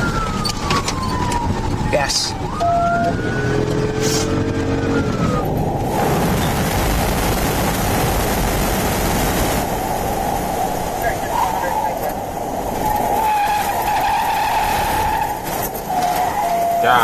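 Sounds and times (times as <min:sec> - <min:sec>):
rising and falling pitched tone: 0:00.0 - 0:10.2
car engine and road noise: 0:00.0 - 0:17.0
rushing wind and tyres: 0:00.0 - 0:17.0.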